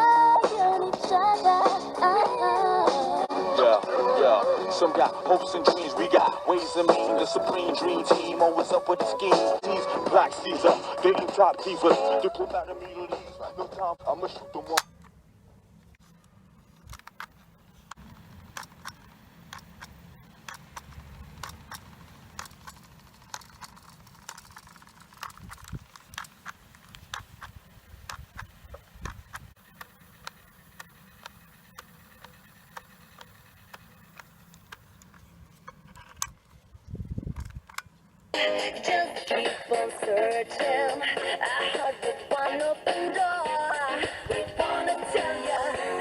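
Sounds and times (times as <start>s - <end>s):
plastic and metal clicks: 16.8s - 36.4s.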